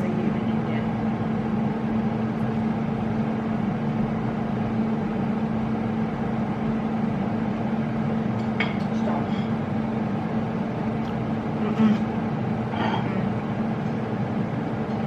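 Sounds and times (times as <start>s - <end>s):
microwave oven humming: 0.0s - 15.0s.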